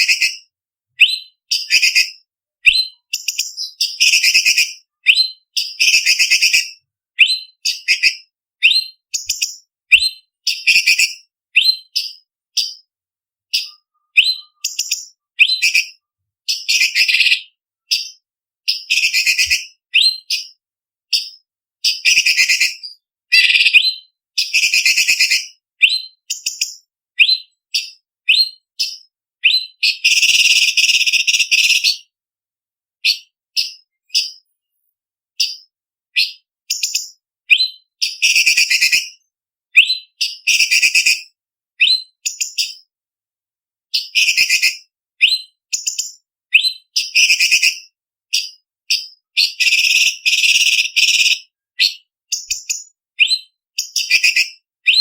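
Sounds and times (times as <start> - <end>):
bird singing whistled trills: 0.0 - 12.9, 13.5 - 32.1, 35.4 - 39.2, 39.8 - 41.2, 41.8 - 42.8, 44.0 - 55.0.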